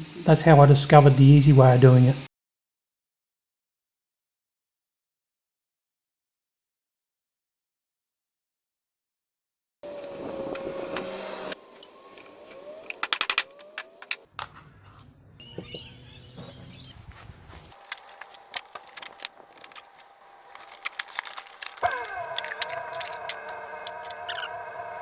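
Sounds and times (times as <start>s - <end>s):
motor whine: 9.8s - 14.3s, 17.8s - 25.0s
rattling run of sharp clicks: 12.8s - 14.2s.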